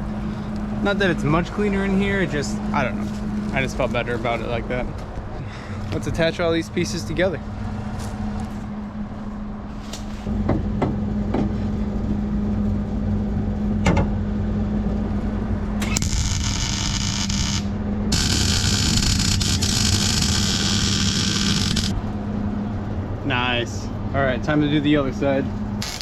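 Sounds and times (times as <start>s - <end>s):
steady hum: 0.0s - 26.0s
crackling sizzling welding arc: 16.0s - 22.0s, 25.8s - 26.0s.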